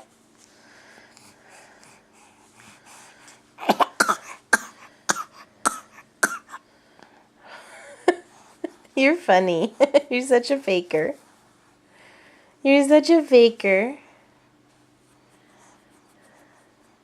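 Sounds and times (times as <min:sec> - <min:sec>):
baby fake-coughing: 0:03.6 - 0:06.6.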